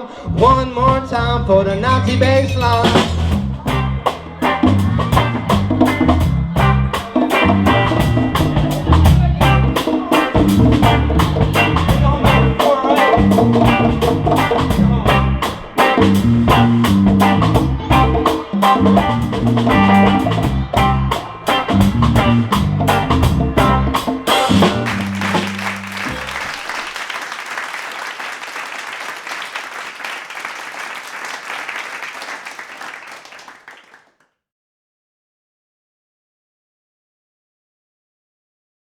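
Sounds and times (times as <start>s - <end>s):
reggae instrumental music: 2.9s - 26.4s.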